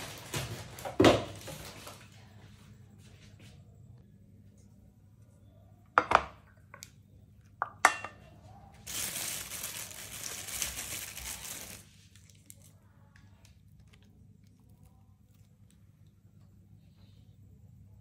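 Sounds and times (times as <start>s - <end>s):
crinkling: 0.0s - 2.2s, 8.8s - 16.2s
kitchenware knocking and clinking: 6.0s - 6.4s, 7.6s - 8.2s.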